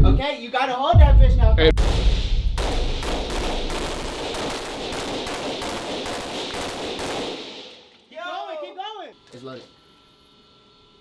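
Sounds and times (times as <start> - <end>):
automatic gunfire: 2.6 - 7.8.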